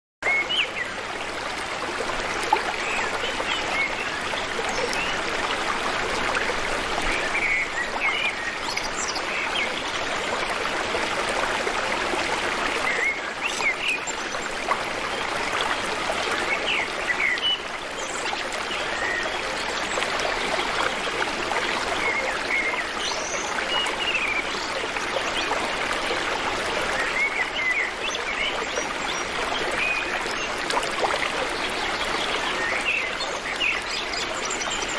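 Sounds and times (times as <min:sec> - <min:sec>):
stream running: 0:00.2 - 0:34.9
birds chirping: 0:12.6 - 0:14.6.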